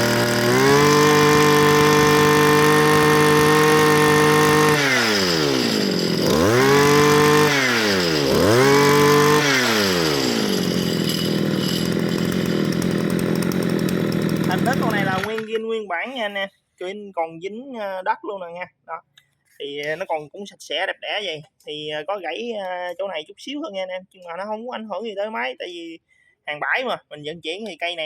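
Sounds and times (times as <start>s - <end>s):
two-stroke brush cutter engine revving: 0.0s - 15.6s.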